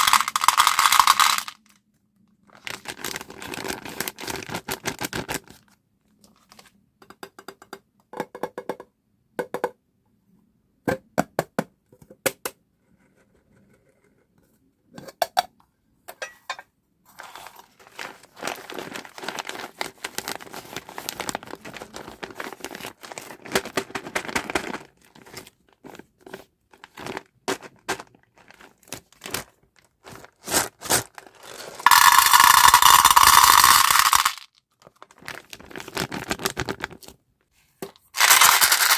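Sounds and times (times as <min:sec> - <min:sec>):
plastic wrappers crinkling: 0:00.0 - 0:01.7, 0:02.4 - 0:05.5, 0:17.2 - 0:37.1, 0:38.2 - 0:38.9
wrapper tearing: 0:02.5 - 0:05.4, 0:17.2 - 0:25.4, 0:28.4 - 0:37.1.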